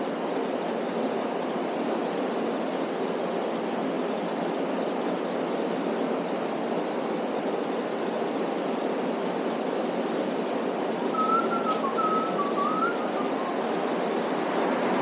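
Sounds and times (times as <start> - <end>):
steady rushing noise: 0.0 - 15.0
high wavering whistle-like tone: 11.1 - 14.1.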